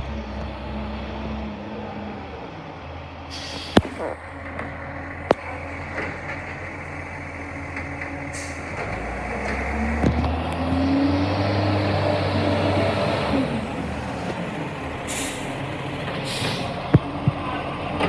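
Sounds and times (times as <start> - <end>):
diesel engine running: 0.0 - 18.0
burst of hiss: 3.3 - 4.0, 15.1 - 15.6, 16.3 - 16.8.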